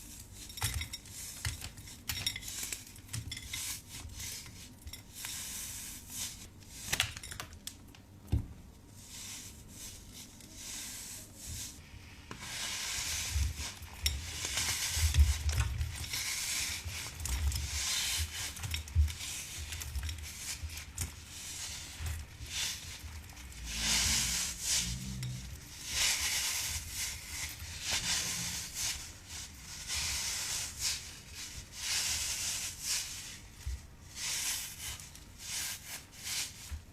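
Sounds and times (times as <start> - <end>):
slime crackling and hissing: 9.0 - 36.9.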